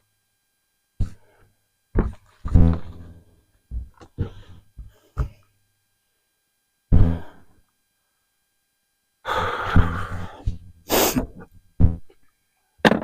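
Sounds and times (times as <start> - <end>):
heavy breath out: 9.2 - 11.3.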